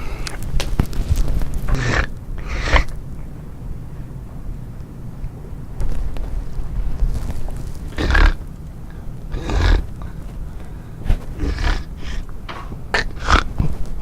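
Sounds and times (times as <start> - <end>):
man snoring loudly: 7.9 - 8.4, 9.3 - 10.0, 11.4 - 12.3.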